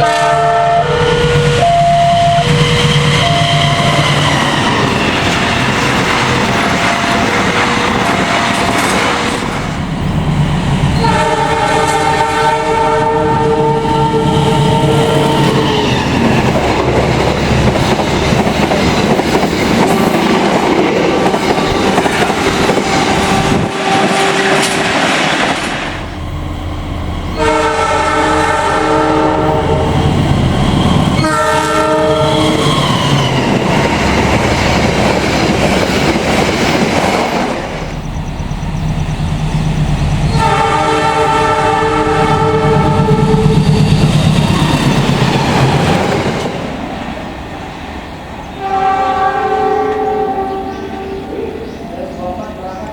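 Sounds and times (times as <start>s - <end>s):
locomotive horn chord: 0.0s - 4.0s, 11.0s - 15.6s, 22.7s - 24.8s, 27.3s - 30.0s, 31.2s - 32.6s, 40.3s - 43.6s, 48.6s - 51.6s
train rumble and clickety-clack: 0.0s - 52.9s.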